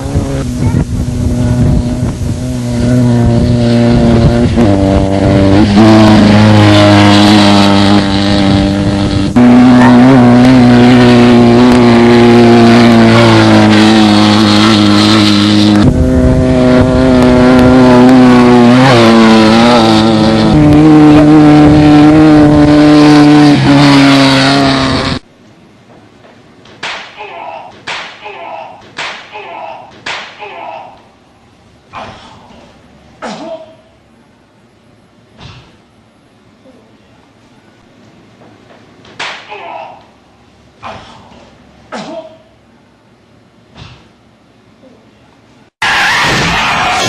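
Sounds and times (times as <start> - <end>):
buggy engines at high revs: 0.0 - 25.3, 45.8 - 47.0.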